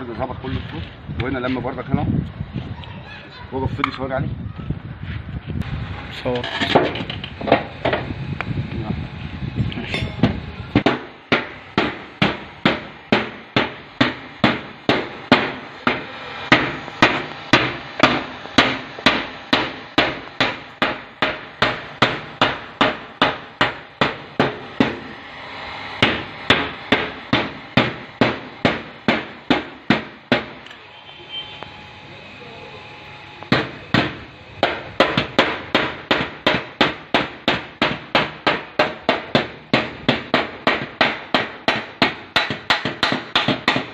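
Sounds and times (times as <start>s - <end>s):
hammer striking sheet metal: 9.9s - 25.3s, 26.0s - 30.7s, 33.5s - 43.9s.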